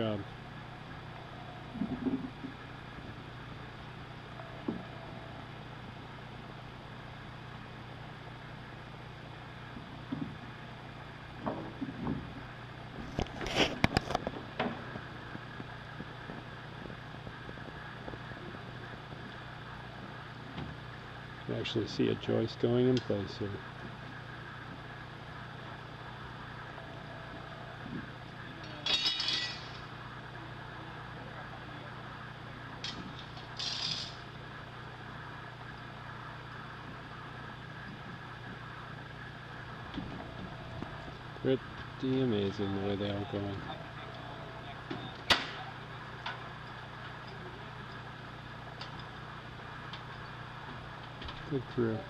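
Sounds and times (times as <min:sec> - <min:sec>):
steady low hum: 0:00.0 - 0:52.0
metallic clinking and clattering: 0:28.8 - 0:29.9, 0:32.9 - 0:34.2.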